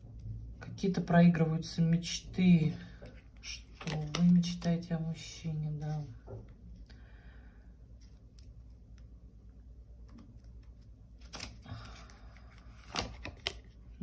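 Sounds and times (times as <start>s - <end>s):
cards rustling: 3.0s - 4.8s, 10.0s - 14.0s.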